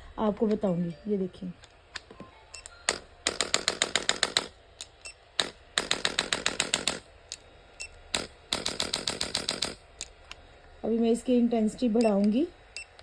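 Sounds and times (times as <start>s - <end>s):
adjuster gun rapid clicks: 2.9s - 7.4s, 8.1s - 10.4s.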